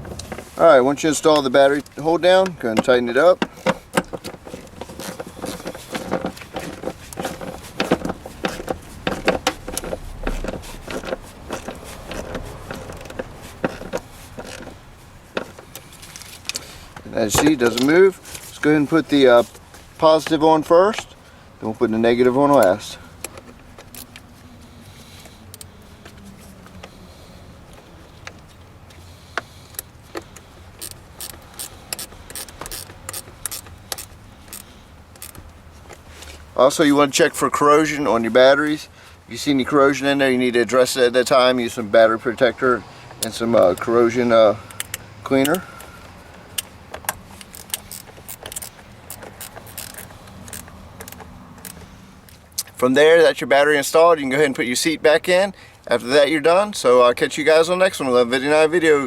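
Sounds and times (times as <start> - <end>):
ratchet clicking: 29.4 - 35.5, 46.5 - 52.7.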